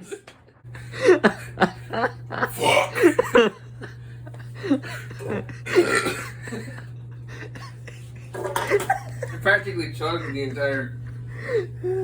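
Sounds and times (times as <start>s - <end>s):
steady low hum: 0.0s - 12.0s
person coughing: 2.4s - 3.3s, 5.2s - 6.4s.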